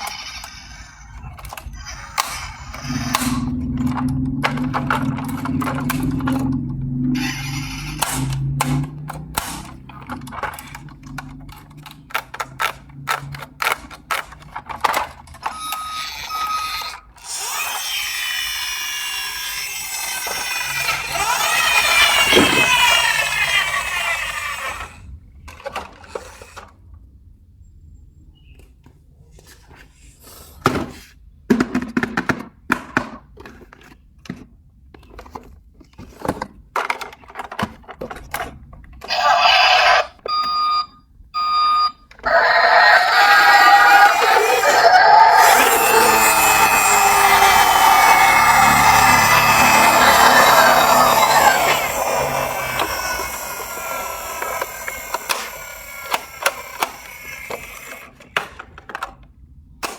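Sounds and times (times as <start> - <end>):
plastic toys clicking and clattering: 0.0 - 26.9, 30.7 - 40.6, 42.0 - 59.9
electronic toy sweeping pitches: 15.5 - 25.0, 43.0 - 57.5.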